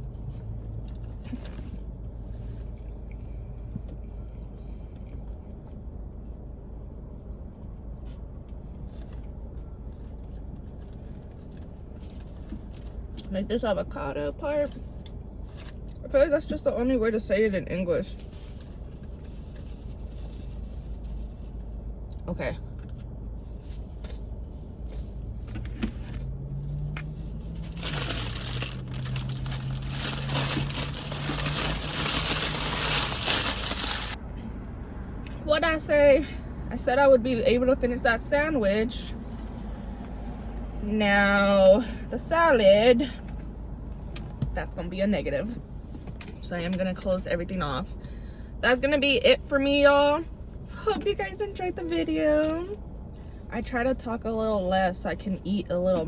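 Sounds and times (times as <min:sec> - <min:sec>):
low steady hum: 0:00.0 - 0:56.0
car cabin rumble: 0:16.1 - 0:39.2
paper packaging crinkling: 0:27.2 - 0:34.2.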